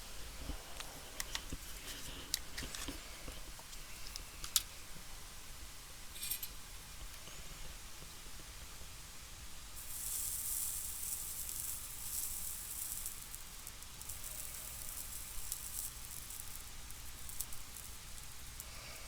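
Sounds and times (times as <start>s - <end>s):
solder sizzling under soldering iron: 9.8s - 19.0s.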